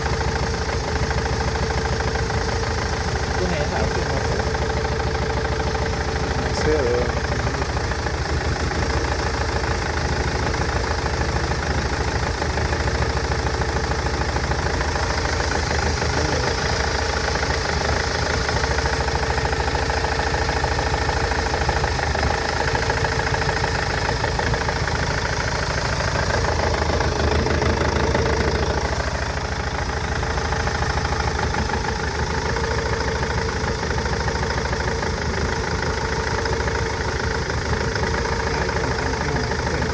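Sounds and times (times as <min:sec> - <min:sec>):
van engine idling with misfire: 0:00.0 - 0:39.9.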